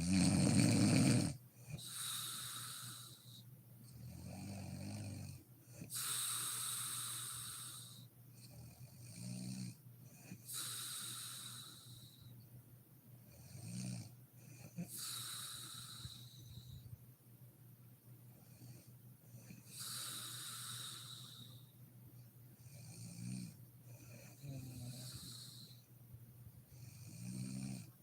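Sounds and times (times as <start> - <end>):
woman snoring: 0.0 - 3.4, 4.1 - 8.1, 10.4 - 12.2, 13.4 - 16.5, 19.5 - 21.6, 22.7 - 25.8, 26.8 - 28.0.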